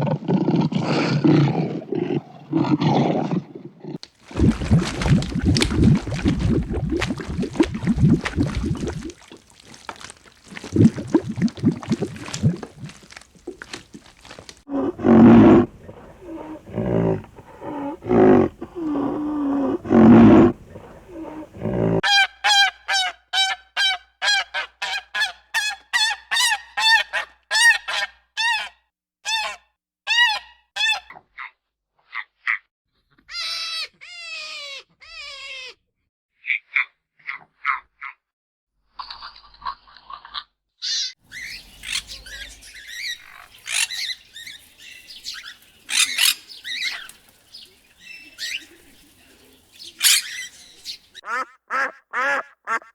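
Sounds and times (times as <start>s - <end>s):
rough animal vocalising: 0.0s - 22.0s, 41.3s - 52.9s
falling animal calls: 4.2s - 19.9s, 41.3s - 51.8s
deep animal calls: 4.2s - 22.0s, 41.4s - 51.9s.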